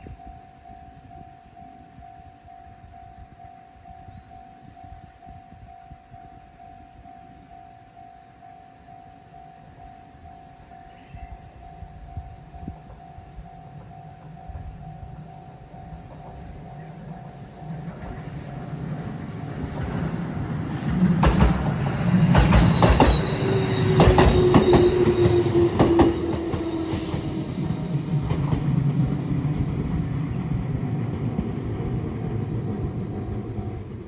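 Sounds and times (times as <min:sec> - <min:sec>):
electric train rumbling past: 0:11.4 - 0:34.0
crossing warning bell: 0:11.7 - 0:28.4
wheels clicking over rail joints: 0:17.2 - 0:31.9.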